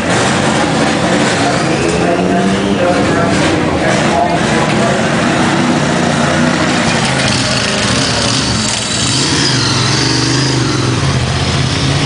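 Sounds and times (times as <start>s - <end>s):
motorcycle engine running: 3.3s - 12.0s.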